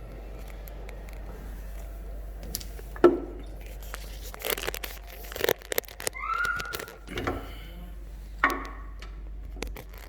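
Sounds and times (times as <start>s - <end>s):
power cable handling noise: 0.0s - 7.6s, 8.4s - 10.0s
low steady hum: 0.0s - 10.0s
clicks: 2.4s - 7.5s.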